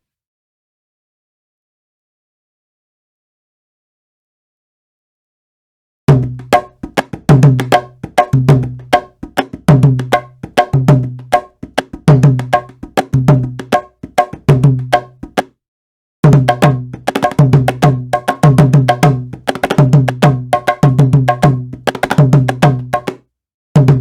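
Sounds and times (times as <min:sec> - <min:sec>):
hand drum loop: 0:06.1 - 0:15.5, 0:16.2 - 0:23.2, 0:23.8 - 0:24.0
deep pitched bass drum: 0:23.8 - 0:24.0.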